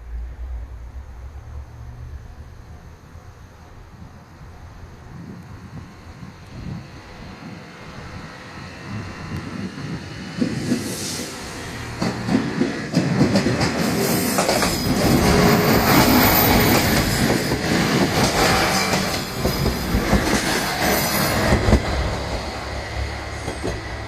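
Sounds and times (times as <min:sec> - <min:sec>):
train wheels clacking over rail joints: 0:10.4 - 0:24.0.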